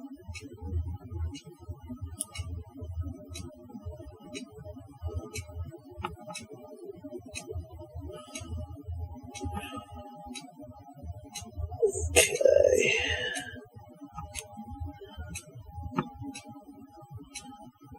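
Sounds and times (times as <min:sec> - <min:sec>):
quiet background music: 0:00.0 - 0:17.9.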